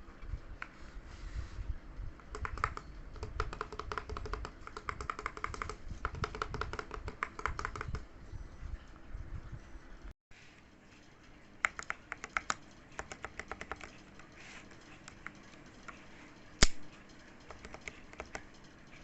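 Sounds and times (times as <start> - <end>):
mechanical keyboard typing: 2.2 - 8.0, 11.6 - 14.3, 17.4 - 18.6.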